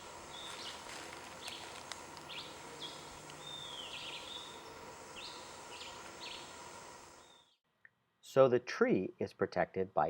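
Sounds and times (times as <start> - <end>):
outdoor background noise: 0.0 - 10.0
bird chirping: 0.3 - 7.6.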